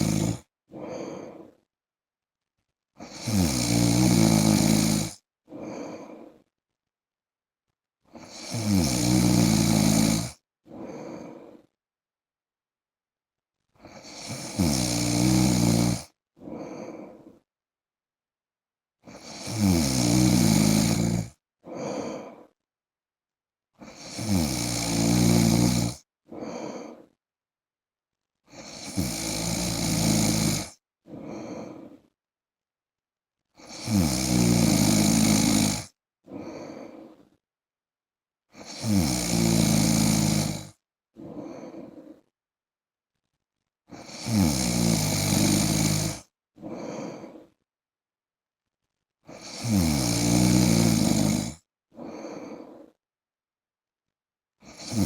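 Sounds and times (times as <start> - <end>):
man snoring: 0.0 - 1.6, 3.0 - 6.5, 8.1 - 11.8, 13.8 - 17.4, 19.0 - 22.6, 23.8 - 27.2, 28.5 - 32.1, 33.6 - 37.4, 38.5 - 42.3, 43.9 - 47.6, 49.3 - 53.0, 54.6 - 55.0
faint breath: 0.0 - 1.7, 5.5 - 6.5, 10.7 - 11.8, 16.4 - 17.5, 21.6 - 22.6, 26.3 - 27.2, 31.1 - 32.2, 36.3 - 37.4, 41.2 - 42.4, 46.1 - 47.6, 51.9 - 53.0.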